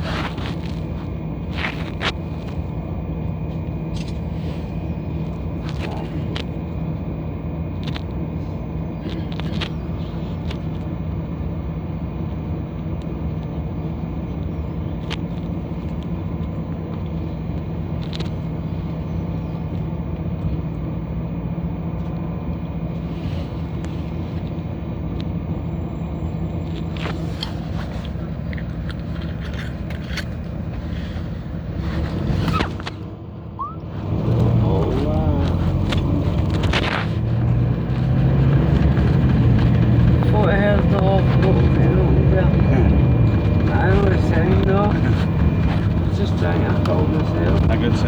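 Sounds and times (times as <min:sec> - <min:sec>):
bus engine drone: 0:00.0 - 0:48.0
bus body clicks and rattles: 0:12.2 - 0:21.0, 0:26.6 - 0:33.3.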